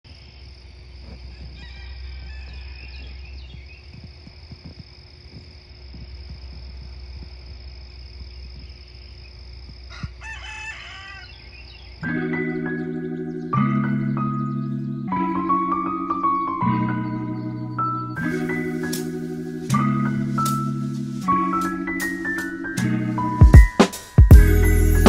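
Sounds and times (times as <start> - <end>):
rooster crowing: 1.2 - 3.5, 9.9 - 11.7.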